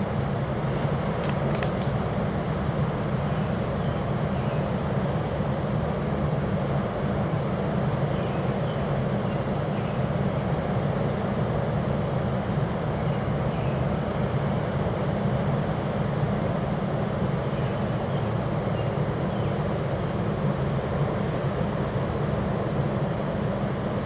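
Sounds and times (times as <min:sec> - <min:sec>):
quick sharp clicks: 0:01.2 - 0:02.0.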